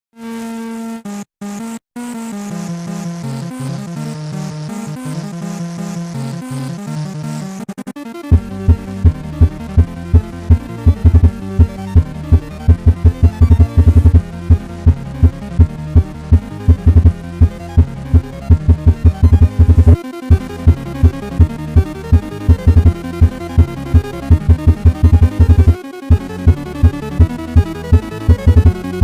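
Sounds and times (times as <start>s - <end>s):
electronic alarm tones: 8.3s - 14.2s, 17.8s - 20.8s, 21.4s - 29.0s
fast bass pulses: 8.3s - 29.0s.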